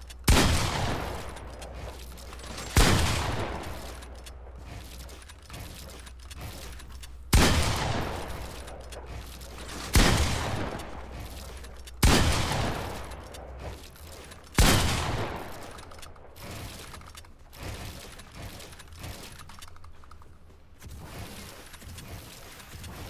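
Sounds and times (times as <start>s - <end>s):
video game gunshots with echo: 0.3s - 4.2s, 7.3s - 13.4s, 14.6s - 16.0s.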